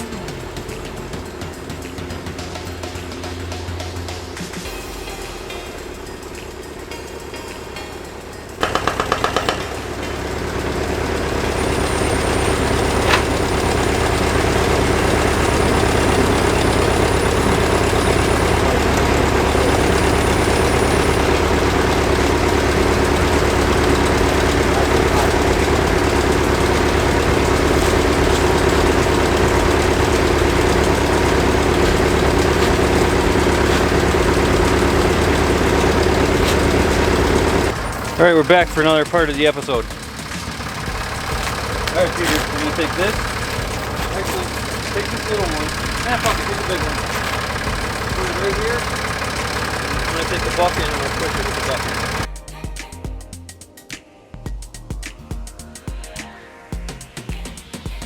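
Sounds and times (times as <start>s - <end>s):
vehicle engine running: 0.0s - 52.3s
rapid loud knocks: 8.6s - 52.3s.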